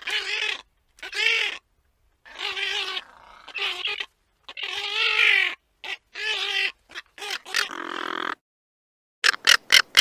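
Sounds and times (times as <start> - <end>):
animal calls: 2.2 - 8.4.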